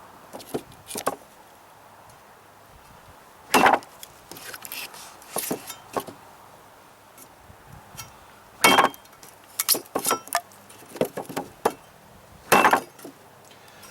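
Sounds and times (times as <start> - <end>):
machete chopping into wood: 3.5 - 3.9, 8.6 - 9.0, 12.5 - 13.0.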